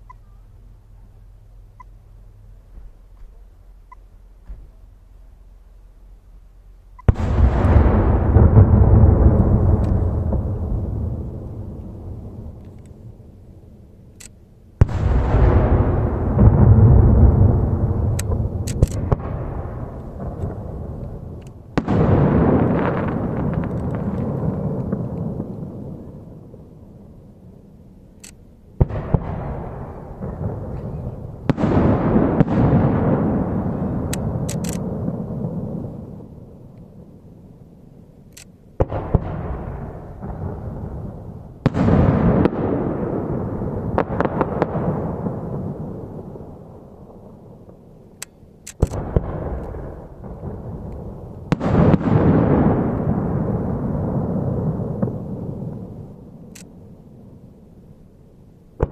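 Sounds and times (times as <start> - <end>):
rumbling echo: 6.6 - 14.0, 14.8 - 27.7, 28.7 - 37.8, 38.8 - 48.0, 48.9 - 57.6
firework cracks: 7.0 - 13.1, 14.8 - 25.8, 28.8 - 36.8, 38.4 - 46.4, 48.6 - 55.9
firework booms: 7.0 - 13.3, 14.8 - 26.8, 28.8 - 37.5, 38.8 - 48.1, 48.8 - 56.5.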